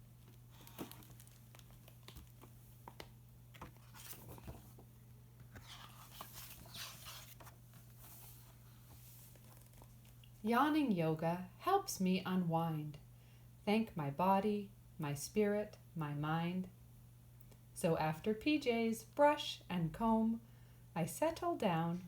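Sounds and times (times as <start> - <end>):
soft clicks of pages: 0.2 - 8.1, 9.2 - 10.3
paper rustling: 0.2 - 10.2.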